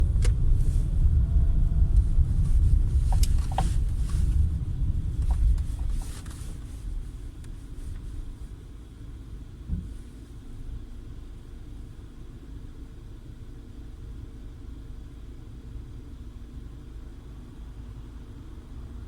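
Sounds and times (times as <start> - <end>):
car rumbling on the move: 0.0 - 19.0
car front end knocks: 9.7 - 10.1.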